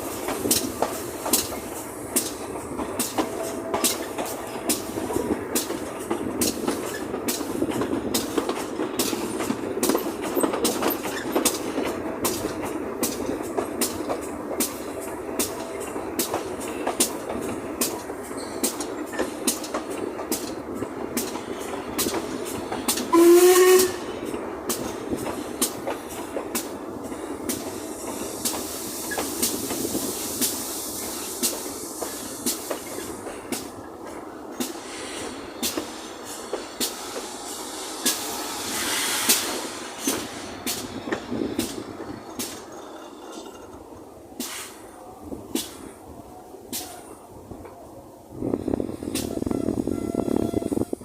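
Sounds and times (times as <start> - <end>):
steam locomotive exhaust beats: 0.0 - 47.6, 48.2 - 51.0
steam hiss: 0.0 - 51.0
steam whistle blast: 23.1 - 24.0, 49.1 - 51.0.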